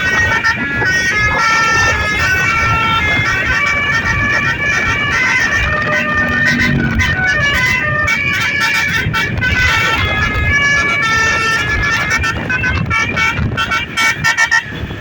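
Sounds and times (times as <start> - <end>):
multi-tone bus horn tune: 0.0 - 15.0
low rumble: 2.4 - 10.8.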